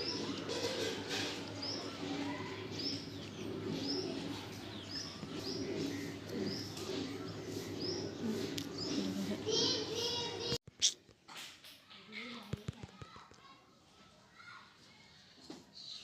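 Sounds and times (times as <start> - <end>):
background murmur: 0.0 - 10.6.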